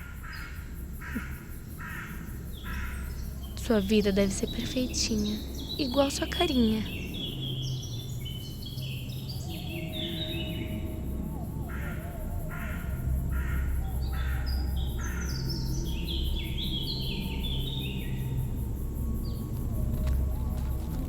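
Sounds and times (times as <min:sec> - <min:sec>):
harsh caw-like bird calls: 0:00.0 - 0:03.7, 0:06.9 - 0:18.3.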